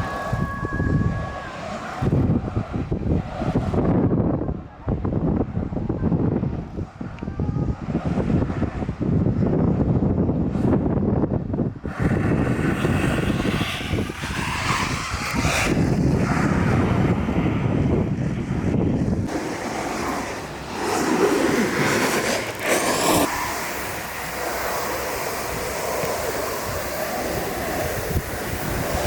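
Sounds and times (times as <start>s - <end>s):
wheels rolling on pavement: 0.0s - 3.9s, 11.5s - 29.0s
wind rushing over microphone: 0.0s - 29.0s.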